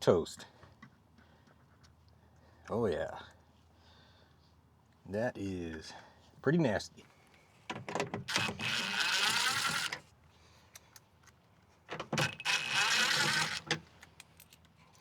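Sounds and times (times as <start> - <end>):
drill clicks: 8.2 - 10.0, 12.0 - 14.7
cordless drill running: 8.3 - 10.0, 12.2 - 13.8.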